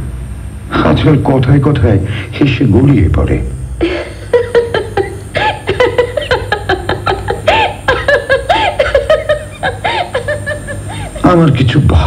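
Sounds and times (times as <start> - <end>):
woman giggling: 3.8 - 11.3.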